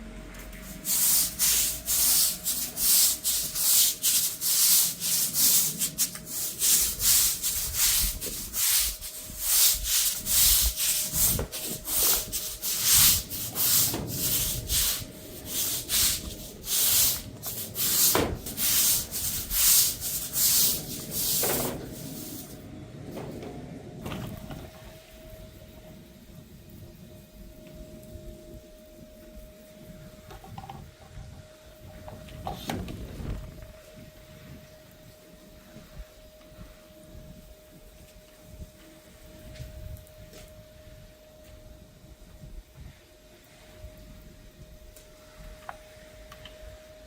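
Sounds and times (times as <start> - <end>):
stiff brush scraping paving: 0.4 - 22.6.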